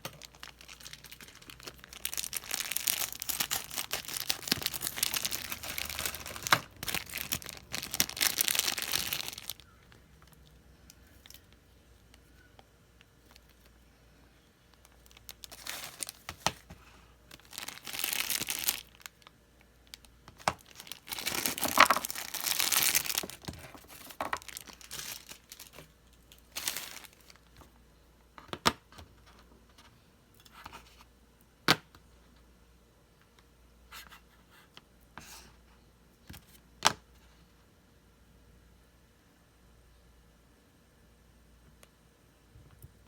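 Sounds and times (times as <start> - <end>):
packaging tearing and crinkling: 0.0 - 9.6, 15.0 - 16.6, 17.3 - 19.3, 20.4 - 27.4.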